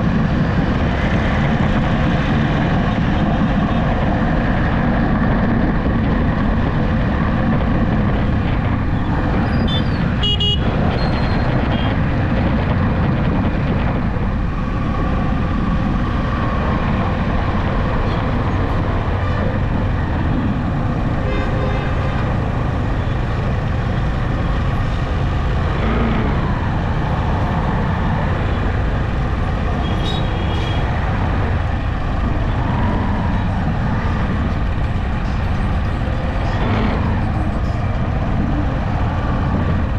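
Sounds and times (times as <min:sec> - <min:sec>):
tyre and wind noise: 0:00.0 - 0:39.9
vehicle engine hum: 0:00.0 - 0:39.9
car horn toots: 0:09.7 - 0:10.7.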